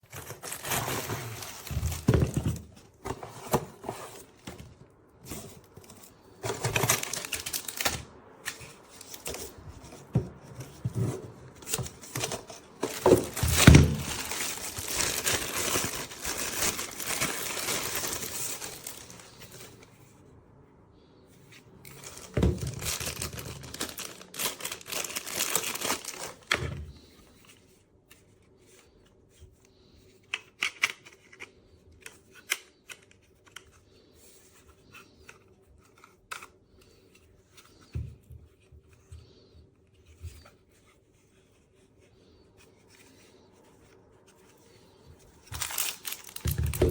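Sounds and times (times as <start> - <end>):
packaging crinkling: 0.1 - 2.5, 6.4 - 8.1, 11.6 - 19.7, 21.9 - 26.6, 45.4 - 46.9.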